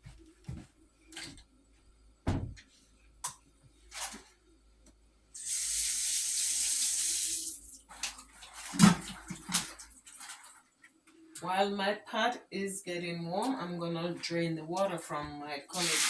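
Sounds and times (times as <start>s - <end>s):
kitchen tap running: 5.4s - 7.8s, 15.7s - 16.0s.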